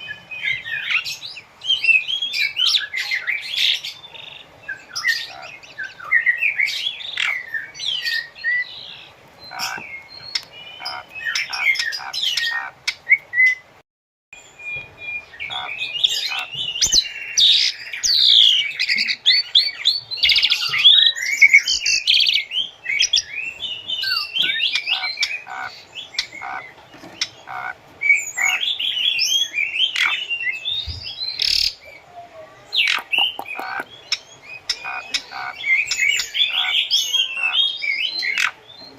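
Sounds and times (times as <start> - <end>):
starling singing whistles and squawks: 9.5 - 13.7, 14.8 - 31.9, 32.8 - 38.6.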